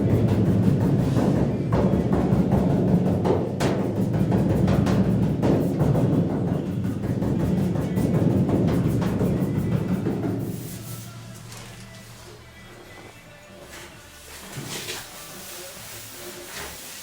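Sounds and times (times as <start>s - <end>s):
hammer blows on sheet metal: 0.0s - 12.0s.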